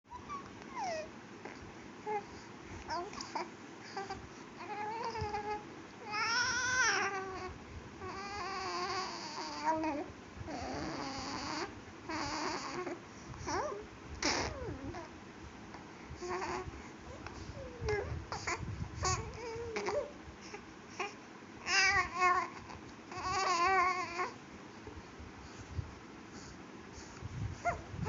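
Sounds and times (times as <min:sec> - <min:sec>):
baby babbling and cooing: 0:00.1 - 0:02.3, 0:02.9 - 0:15.1, 0:16.2 - 0:20.2, 0:21.0 - 0:24.4.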